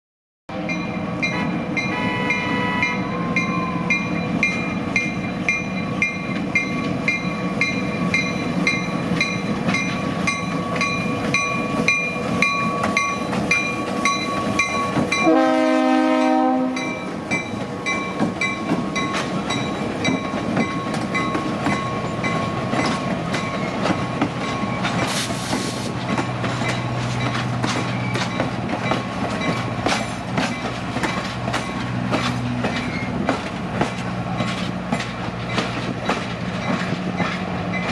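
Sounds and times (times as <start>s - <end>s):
locomotive bell ringing: 0.6s - 25.0s, 26.1s - 29.8s, 35.4s - 37.9s
train horn blast: 1.2s - 3.9s, 15.2s - 17.0s
train wheels clicking over rail joints: 3.9s - 15.3s, 16.8s - 37.9s.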